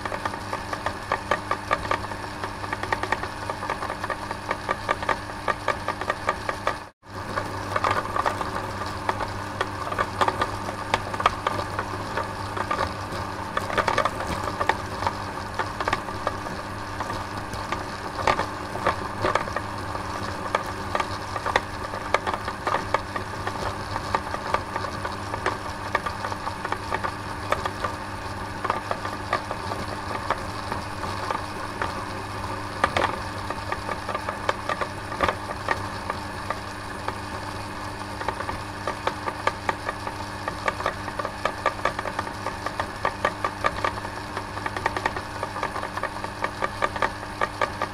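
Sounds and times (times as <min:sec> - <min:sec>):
electric machine humming: 0:00.0 - 0:47.9
rapid clicks and rattles: 0:00.0 - 0:47.9.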